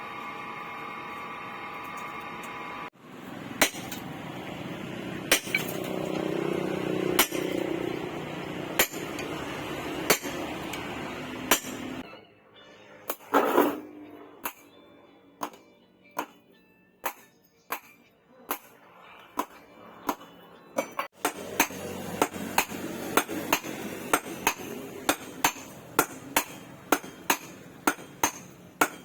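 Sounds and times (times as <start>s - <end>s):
hammer striking steel: 3.6s - 4.1s, 5.3s - 8.1s, 8.7s - 12.0s, 13.1s - 14.8s, 15.4s - 15.6s, 16.2s - 16.4s, 17.0s - 18.8s, 19.4s - 29.0s.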